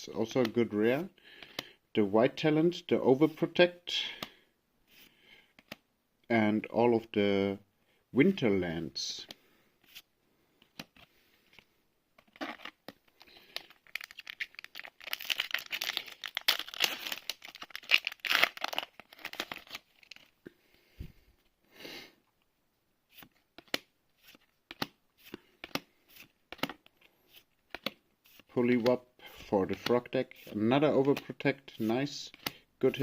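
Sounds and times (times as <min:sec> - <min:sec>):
plastic wrapper tearing and crinkling: 0:12.3 - 0:20.4
cards clicking as handled: 0:23.6 - 0:23.9, 0:24.7 - 0:26.9, 0:27.7 - 0:28.0.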